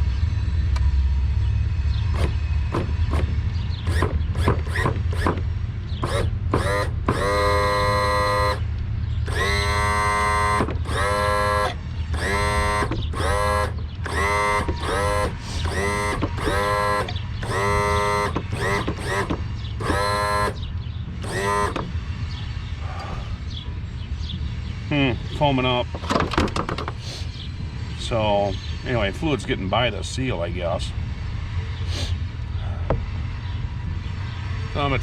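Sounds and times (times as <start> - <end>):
steady low hum: 0.0 - 26.1, 26.8 - 35.0
electric pump motor whining: 2.0 - 22.5.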